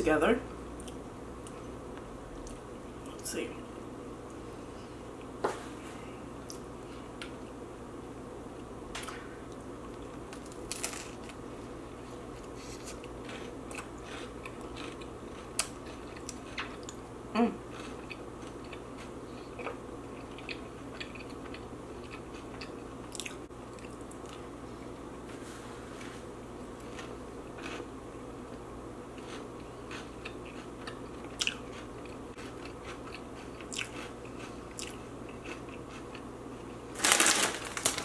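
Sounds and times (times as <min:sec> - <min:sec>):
crunchy chewing: 0:12.4 - 0:17.0, 0:17.6 - 0:24.4, 0:26.8 - 0:28.0, 0:29.1 - 0:38.0.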